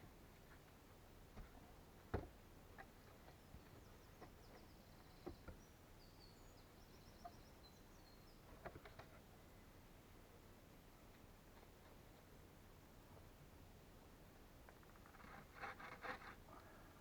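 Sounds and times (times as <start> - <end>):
small bird singing faintly: 2.9 - 9.8.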